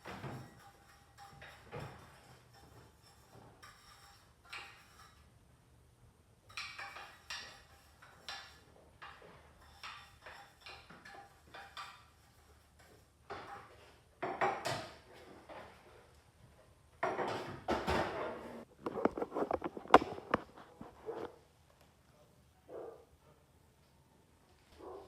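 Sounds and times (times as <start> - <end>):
kitchen utensils clattering: 0.0 - 5.3, 6.5 - 15.8, 17.0 - 20.8.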